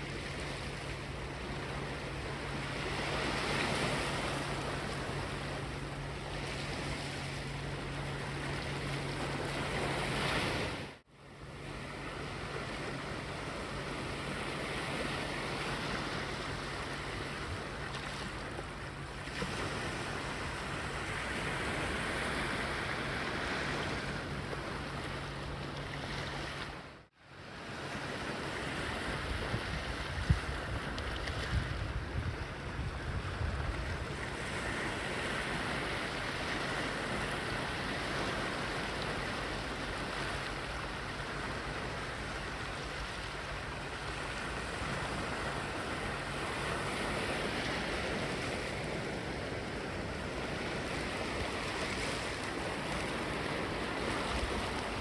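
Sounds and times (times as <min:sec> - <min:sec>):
sea waves washing on beach: 0:11.6 - 0:55.0
wind bumps on microphone: 0:29.2 - 0:34.4.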